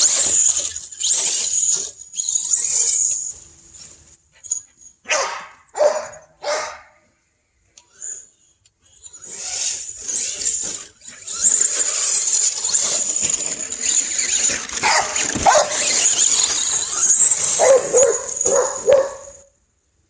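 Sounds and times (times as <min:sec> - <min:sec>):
electric motor high whine: 0:00.0 - 0:04.7, 0:07.8 - 0:19.6
dog whining and yelping: 0:04.3 - 0:06.9, 0:13.8 - 0:19.5.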